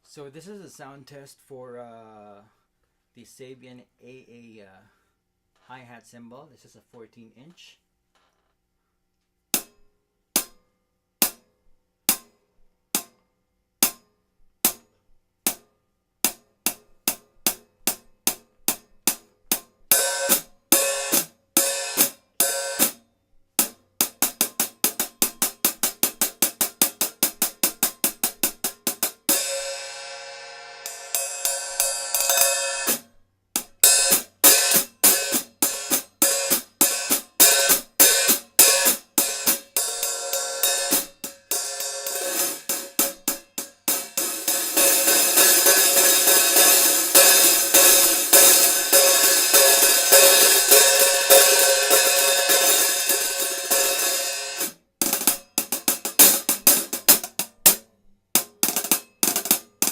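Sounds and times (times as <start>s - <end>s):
hi-hat strikes: 23.6s - 57.8s.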